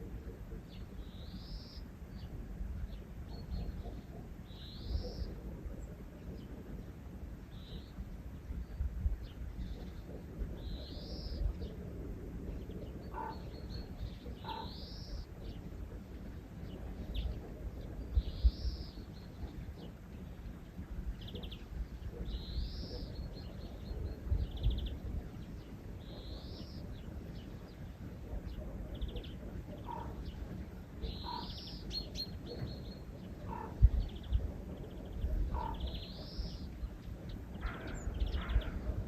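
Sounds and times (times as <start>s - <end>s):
bird chirping: 0.7s - 5.9s, 12.5s - 15.7s, 21.2s - 38.9s.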